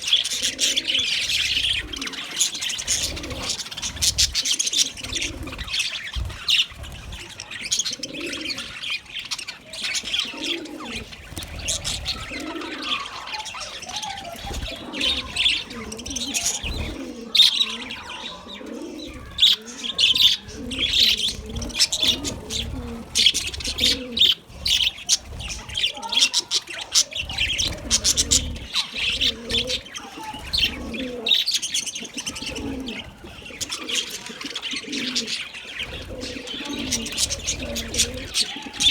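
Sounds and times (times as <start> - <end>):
budgerigars chattering: 0.0 - 38.9
low coo-like notes: 10.2 - 31.4, 32.1 - 38.9.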